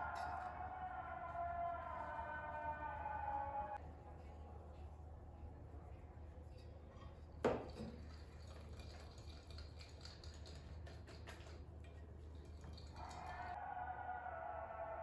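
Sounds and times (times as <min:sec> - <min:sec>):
utensils clicking and tapping: 0:06.6 - 0:13.4.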